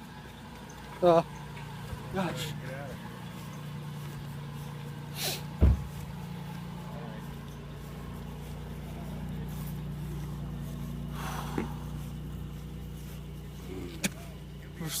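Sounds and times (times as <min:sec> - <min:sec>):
car engine idling: 0:00.0 - 0:15.0
loud low thump: 0:05.6 - 0:05.9.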